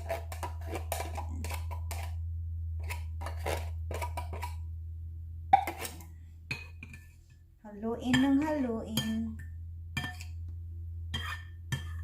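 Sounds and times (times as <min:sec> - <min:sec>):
utensil scraping in bowl: 0:00.0 - 0:02.2, 0:02.8 - 0:04.6, 0:05.6 - 0:06.1, 0:11.1 - 0:12.0
steady low hum: 0:00.0 - 0:12.0
utensil knocking bowl: 0:08.0 - 0:10.5.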